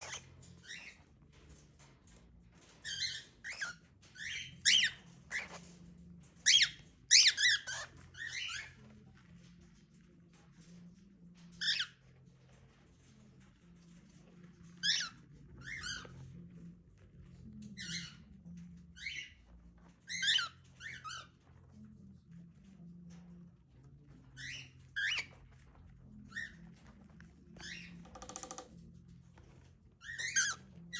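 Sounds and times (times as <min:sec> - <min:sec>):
cockatiel chirping: 0:00.0 - 0:01.0, 0:02.8 - 0:05.6, 0:06.4 - 0:08.7, 0:14.8 - 0:16.1, 0:20.1 - 0:21.3, 0:24.4 - 0:25.3, 0:30.0 - 0:30.6
cockatiel chirping and whistling: 0:06.5 - 0:08.6.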